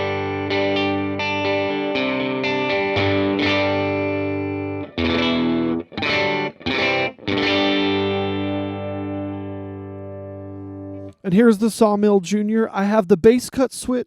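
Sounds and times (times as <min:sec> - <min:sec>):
clean electric guitar chords: 0:00.0 - 0:11.2.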